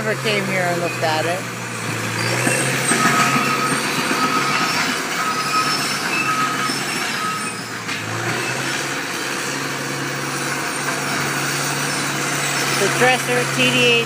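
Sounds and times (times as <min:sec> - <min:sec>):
dozer diesel engine running: 0:00.0 - 0:14.0
short squeaks: 0:02.1 - 0:08.8.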